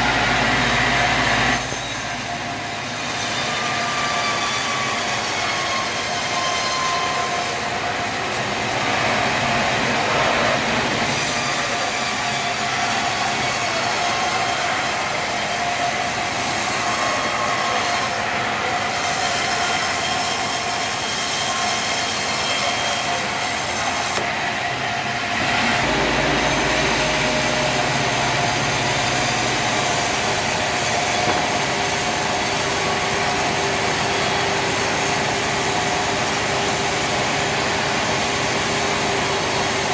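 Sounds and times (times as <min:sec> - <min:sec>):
saw cutting through log: 0:00.0 - 0:39.9
deep motor hum: 0:25.4 - 0:36.0.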